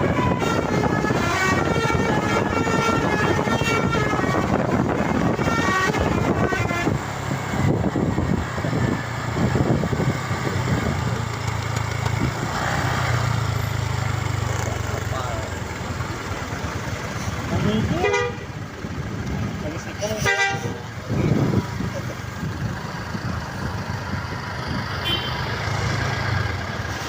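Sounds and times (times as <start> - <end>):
multi-tone bus air horn tune: 0.0 - 7.0, 17.9 - 18.5, 20.2 - 20.9, 25.0 - 25.4
bus engine rumbling: 0.0 - 27.0.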